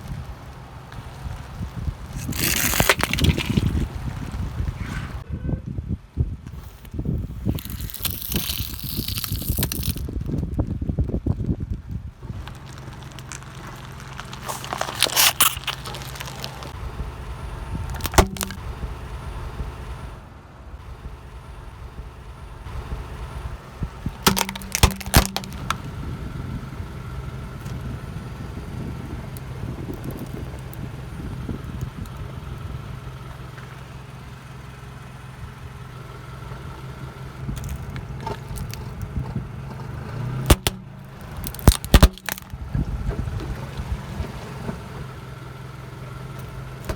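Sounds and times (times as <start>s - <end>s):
car engine running slowly: 0.0s - 46.9s
tyre crushing objects: 2.1s - 5.2s, 7.4s - 10.2s, 12.2s - 16.8s, 18.0s - 18.6s, 24.2s - 25.8s, 39.8s - 42.6s.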